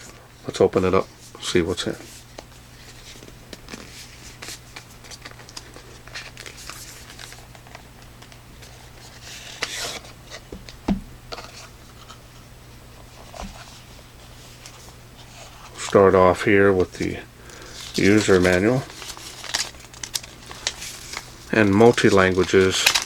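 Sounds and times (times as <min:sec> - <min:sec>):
knock: 0:10.9 - 0:11.1
packing rustling: 0:16.8 - 0:23.0
packaging scratches and clicks: 0:17.5 - 0:23.0.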